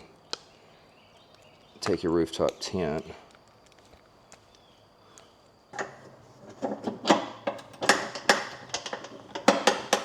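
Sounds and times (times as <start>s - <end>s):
metal clicks and knocks: 5.8s - 10.0s.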